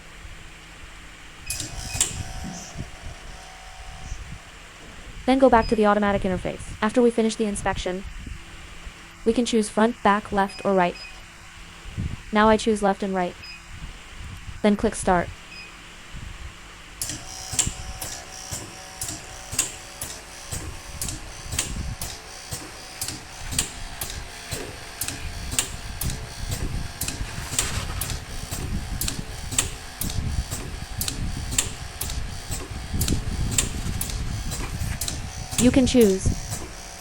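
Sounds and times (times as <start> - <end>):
low mechanical hum: 0.0 - 37.0
air cylinders and valves clicking: 1.5 - 2.9, 17.0 - 37.0.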